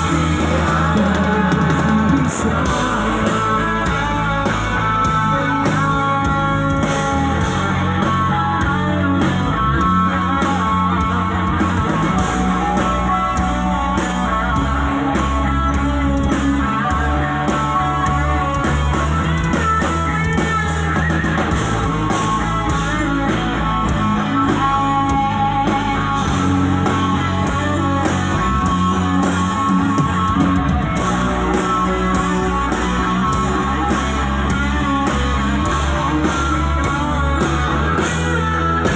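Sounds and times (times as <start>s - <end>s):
rock band instrumental: 0.0s - 38.9s.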